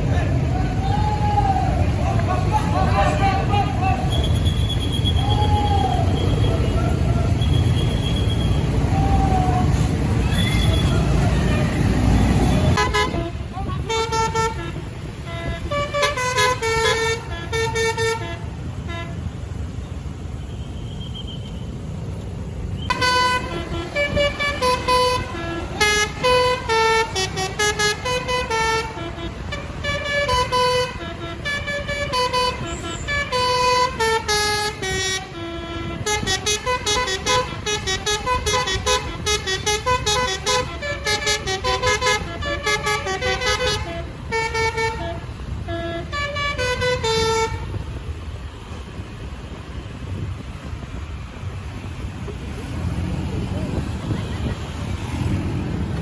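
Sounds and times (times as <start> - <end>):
engine and road rumble: 0.0 - 56.0
multi-tone air horn melody: 12.6 - 19.3, 22.9 - 47.8.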